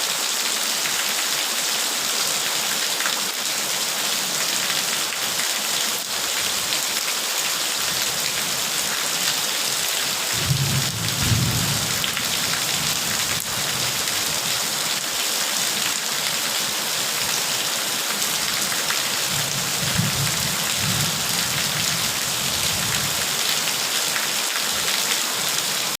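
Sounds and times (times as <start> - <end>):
low thunder rumbling: 10.4 - 12.5.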